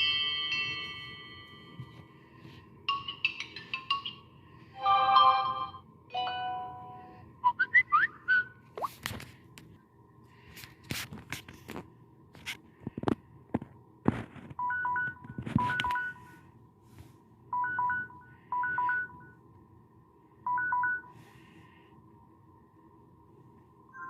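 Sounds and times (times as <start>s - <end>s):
phone ringtone beeps: 14.6s - 16.3s, 17.6s - 19.4s, 20.5s - 21.2s.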